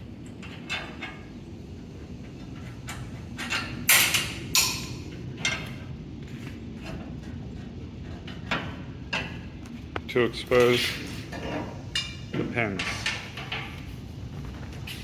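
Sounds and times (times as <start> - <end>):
metal parts clanking and scraping: 10.4 - 15.0.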